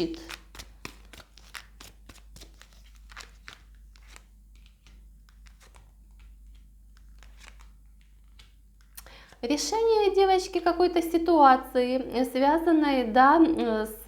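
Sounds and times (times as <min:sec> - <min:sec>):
cards being shuffled: 0:00.0 - 0:09.4.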